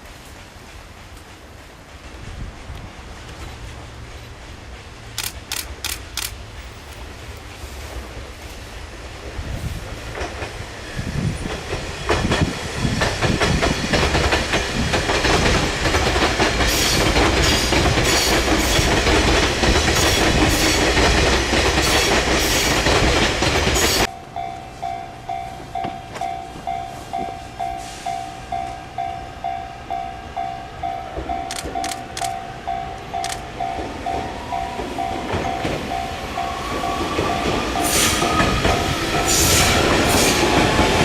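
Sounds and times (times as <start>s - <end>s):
train wheels clattering: 9.8s - 24.1s
level-crossing warning bell: 23.9s - 38.1s.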